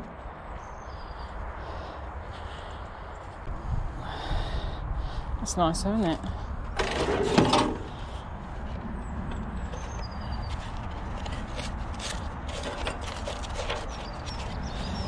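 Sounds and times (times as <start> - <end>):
scrap metal clattering: 6.8 - 7.9, 11.2 - 15.0.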